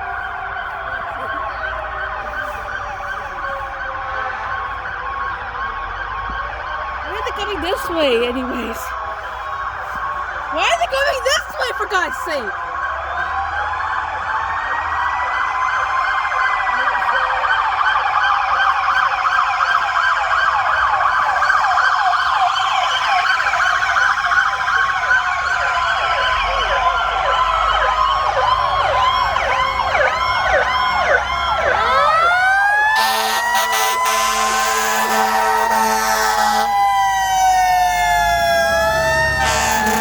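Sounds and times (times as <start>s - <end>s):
electronic sirens wailing and yelping: 6.6s - 40.0s
mechanical siren rising and falling: 19.6s - 40.0s
loud horn blast: 32.9s - 40.0s.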